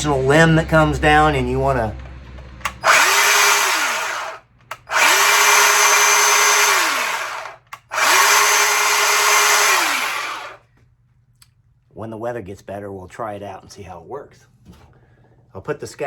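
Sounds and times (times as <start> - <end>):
chainsaw motor whining: 2.6 - 10.6.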